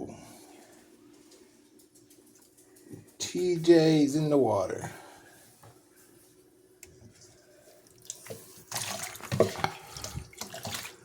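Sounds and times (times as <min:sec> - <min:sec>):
faint steady hum: 0:00.0 - 0:11.0
bath water splashing: 0:07.2 - 0:11.0.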